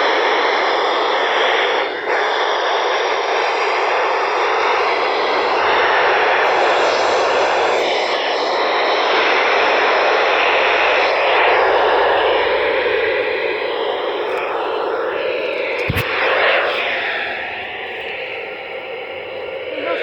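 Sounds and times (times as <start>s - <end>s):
radio static hiss: 0.0s - 20.0s
sharp click: 15.8s - 16.1s
faint broadcast voice: 19.4s - 20.0s.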